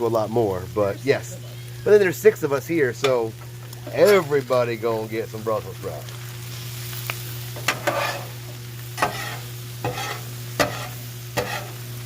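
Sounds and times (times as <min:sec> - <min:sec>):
vegetables sizzling on a griddle: 0:00.0 - 0:12.0
metal spatula scraping and clacking: 0:07.6 - 0:08.4, 0:09.0 - 0:11.8.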